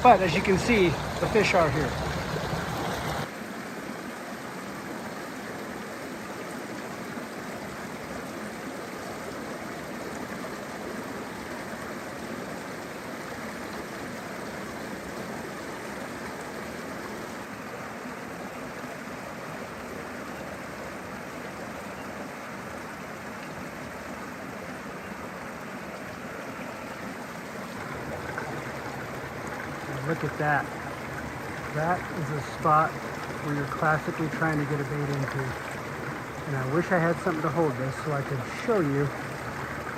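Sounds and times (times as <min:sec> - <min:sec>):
creek rushing over stones: 0:00.0 - 0:21.6, 0:22.3 - 0:39.9.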